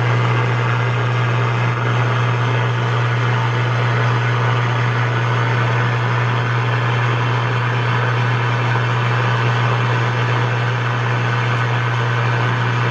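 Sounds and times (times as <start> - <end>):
power line buzz: 11.0 - 12.9.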